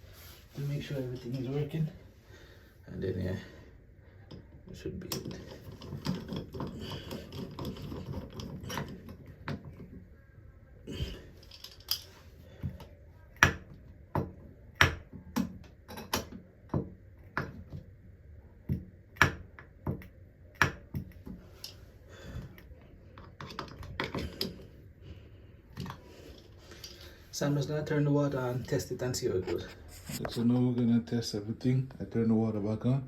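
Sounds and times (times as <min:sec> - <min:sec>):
soft handling noise: 0:21.2 - 0:31.1.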